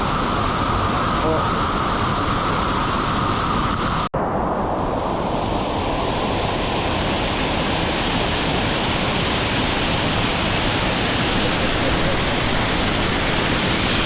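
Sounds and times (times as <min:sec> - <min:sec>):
waterfall rushing: 0:06.1 - 0:14.0.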